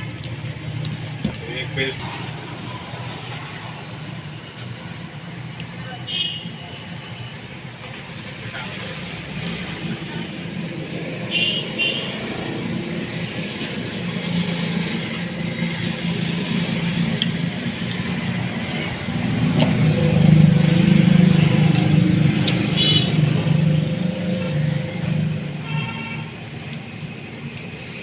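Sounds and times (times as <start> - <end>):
engine rumble: 12.2 - 28.0.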